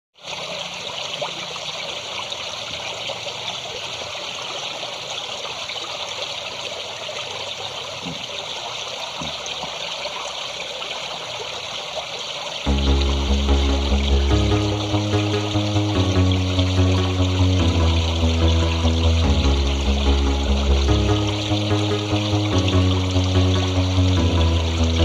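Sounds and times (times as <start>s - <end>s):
waterfall rushing: 12.7s - 25.0s.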